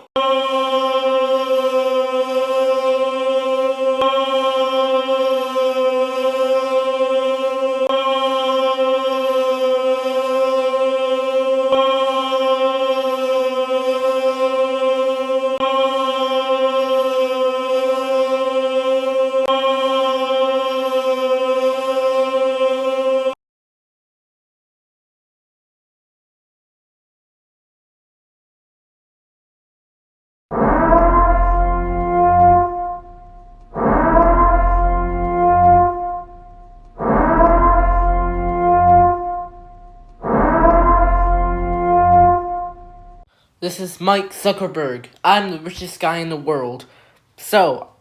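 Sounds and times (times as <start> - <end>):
droning note with overtones: 30.6 - 43.2.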